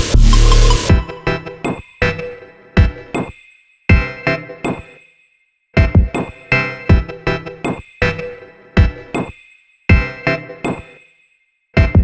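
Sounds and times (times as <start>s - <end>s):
electronic music with drum machine: 0.0s - 1.8s.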